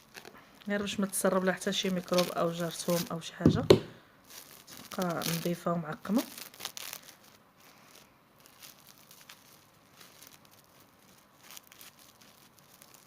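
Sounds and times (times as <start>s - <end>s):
cling film crinkling: 0.0s - 3.4s, 4.2s - 13.0s.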